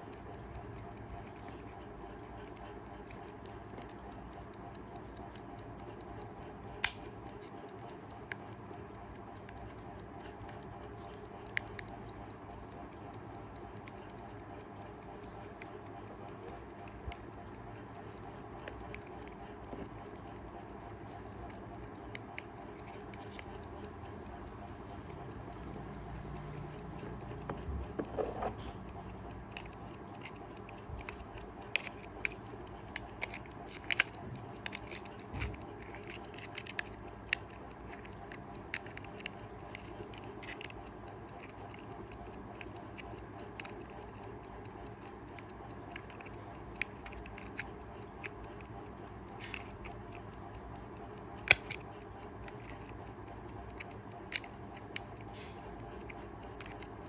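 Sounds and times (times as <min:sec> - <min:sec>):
alarm clock ticking: 0:00.0 - 0:57.0
sharp clicks: 0:00.0 - 0:57.0.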